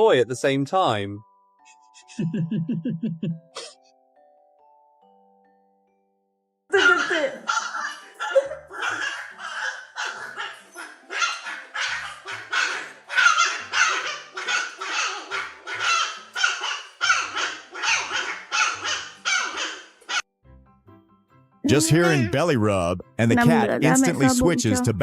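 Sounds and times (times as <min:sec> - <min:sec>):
dog barking: 0:06.8 - 0:20.2.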